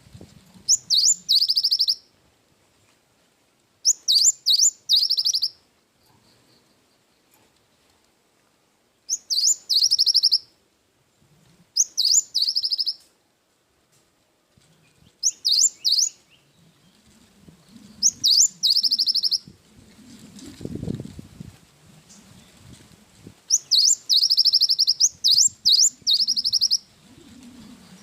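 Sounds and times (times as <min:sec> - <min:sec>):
bird singing trills: 0:00.7 - 0:02.0, 0:03.8 - 0:05.6, 0:09.1 - 0:10.5, 0:11.8 - 0:13.0, 0:14.8 - 0:16.9, 0:17.9 - 0:19.4, 0:23.5 - 0:26.9.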